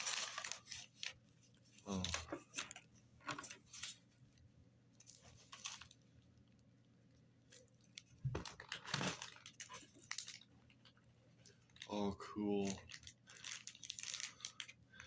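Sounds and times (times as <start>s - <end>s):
packaging rustling and crinkling: 0.0s - 4.0s, 5.0s - 6.0s, 7.5s - 11.9s, 12.6s - 14.8s.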